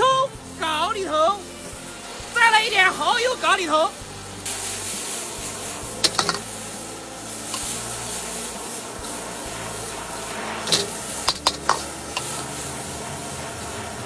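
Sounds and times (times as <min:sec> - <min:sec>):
food sizzling in hot oil: 0:00.0 - 0:14.0
stirring clicks: 0:06.0 - 0:06.6, 0:10.6 - 0:12.4.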